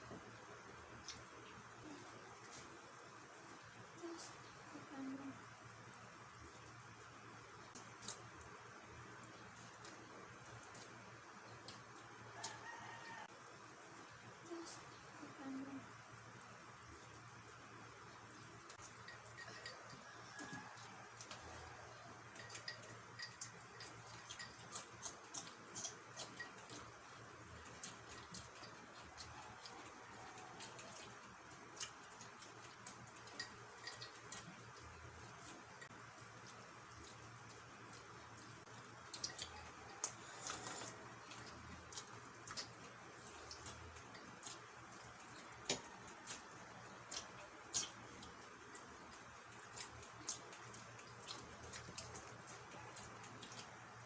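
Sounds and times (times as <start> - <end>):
mouths chewing: 18.3 - 54.0.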